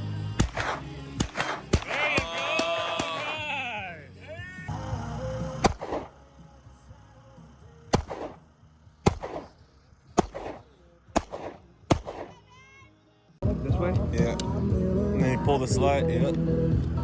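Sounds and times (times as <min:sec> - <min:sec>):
pistol gunshots echoing: 0:00.4 - 0:03.4, 0:05.6 - 0:06.2, 0:07.9 - 0:12.5.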